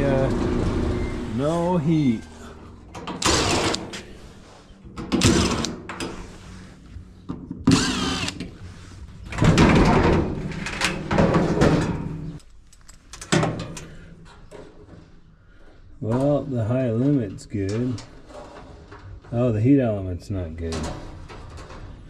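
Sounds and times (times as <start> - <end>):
steady low hum: 0.0 - 10.6
metal panels and tools clattering: 9.2 - 12.4, 20.6 - 22.0.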